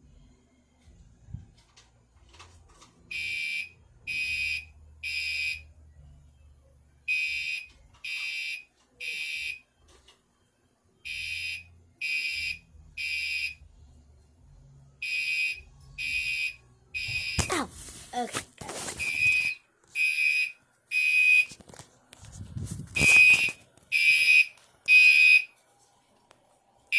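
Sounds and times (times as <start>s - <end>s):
fire alarm horn blasts: 3.1s - 5.6s, 7.1s - 9.6s, 11.0s - 13.6s, 15.0s - 17.5s, 19.0s - 21.5s, 23.0s - 25.5s.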